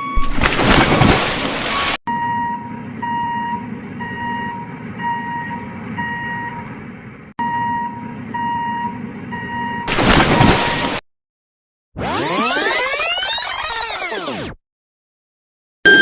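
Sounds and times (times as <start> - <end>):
vehicle reversing alarm beeping: 0.0 - 0.3, 1.6 - 6.7, 7.4 - 9.9
low engine rumble: 2.2 - 9.9.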